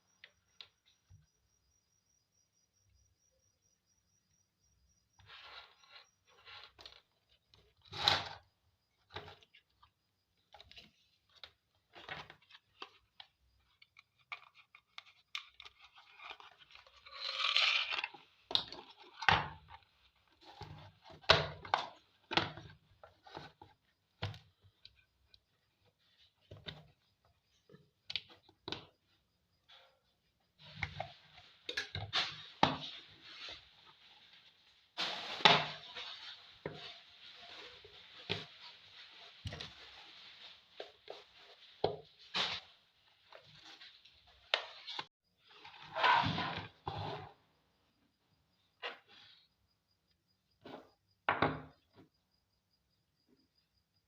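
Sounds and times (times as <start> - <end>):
rustling scrape: 16.1 - 18.1, 32.1 - 47.3.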